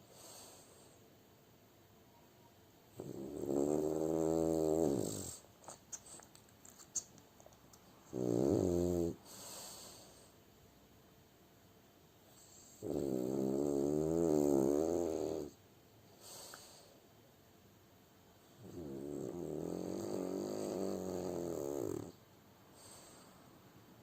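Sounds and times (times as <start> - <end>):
dog snoring: 2.9 - 5.5, 8.0 - 10.3, 12.3 - 15.6, 18.6 - 22.2.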